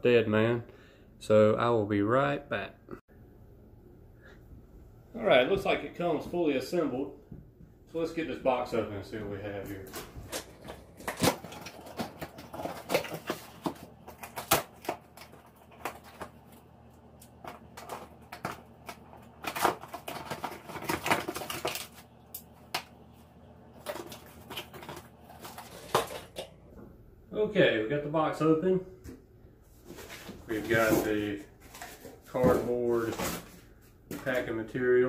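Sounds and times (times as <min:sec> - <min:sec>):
cardboard scraping rustles: 0:09.5 - 0:16.7, 0:23.8 - 0:26.5, 0:29.7 - 0:34.5.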